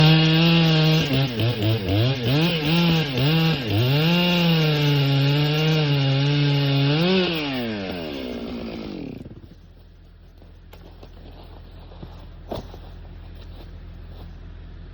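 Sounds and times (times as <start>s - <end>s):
chainsaw engine winding down: 0.0s - 9.6s
chainsaw cutting wood: 0.0s - 12.9s.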